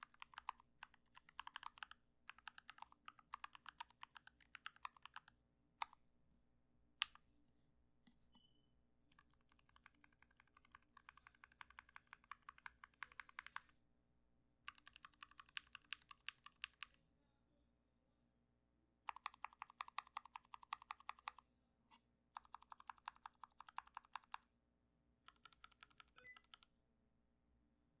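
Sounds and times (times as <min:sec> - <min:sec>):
mechanical keyboard typing: 0:00.0 - 0:06.0, 0:09.1 - 0:13.7, 0:14.7 - 0:16.9, 0:19.1 - 0:21.4, 0:22.4 - 0:24.4, 0:25.3 - 0:26.7.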